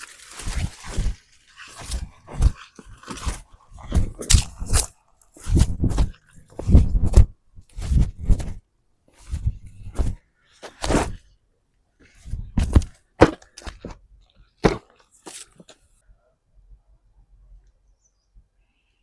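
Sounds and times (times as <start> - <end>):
thuds and cracks: 12.6 - 14.0, 14.6 - 14.9.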